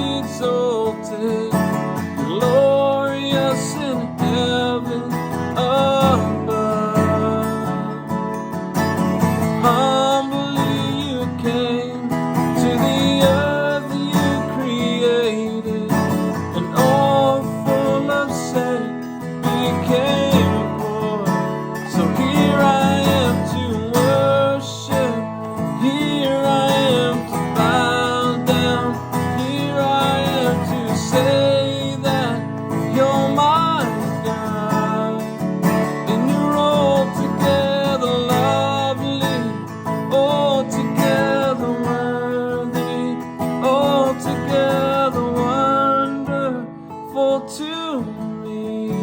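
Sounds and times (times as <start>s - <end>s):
man singing: 0.0s - 49.0s
strummed acoustic guitar: 0.0s - 49.0s.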